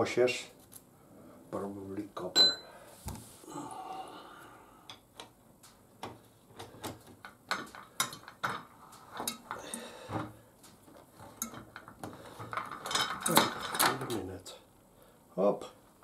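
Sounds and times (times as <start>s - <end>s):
metallic clicks of tools and parts: 11.4s - 14.0s.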